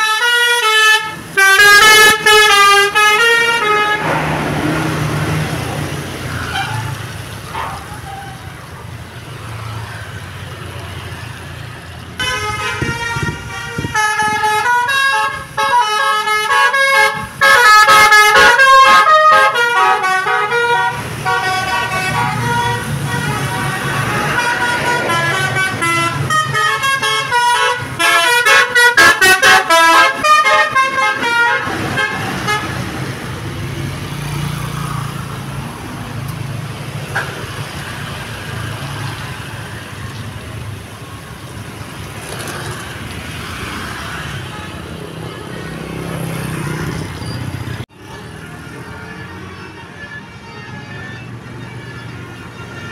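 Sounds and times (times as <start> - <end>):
musical air horn tune: 0.0 - 4.3, 12.2 - 32.8
bus engine running: 19.5 - 43.4.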